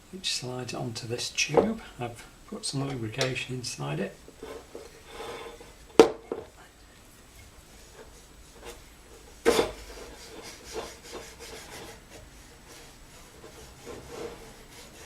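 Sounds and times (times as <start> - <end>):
light rubbing: 4.3 - 5.9, 7.2 - 15.0.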